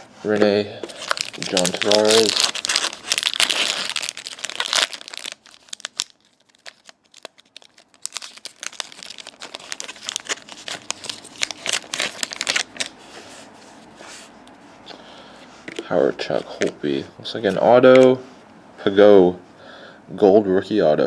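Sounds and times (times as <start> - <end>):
wrappers crinkling and tearing: 0.8 - 13.0.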